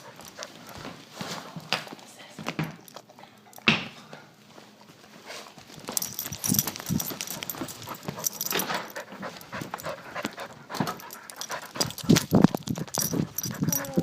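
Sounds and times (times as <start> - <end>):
dog panting: 0.0 - 1.1, 5.2 - 14.0.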